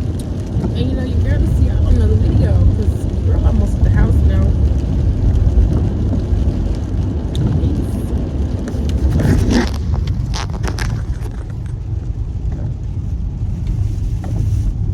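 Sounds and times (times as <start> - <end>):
low rumble inside car: 0.0 - 14.9
scraping: 8.7 - 11.8.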